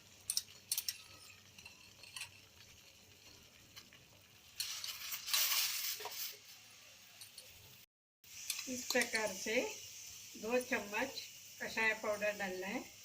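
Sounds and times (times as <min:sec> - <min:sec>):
spoon clinking: 0:00.2 - 0:02.6
loud hiss: 0:08.2 - 0:13.0.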